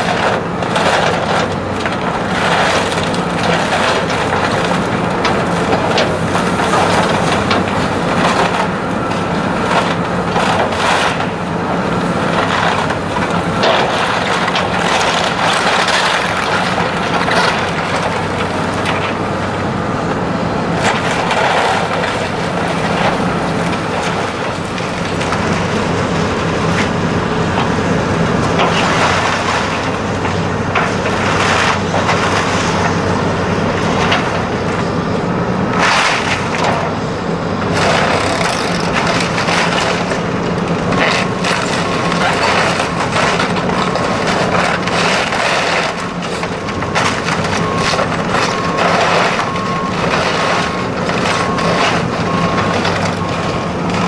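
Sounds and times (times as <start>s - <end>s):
mill machinery rattling: 37.7s - 54.0s.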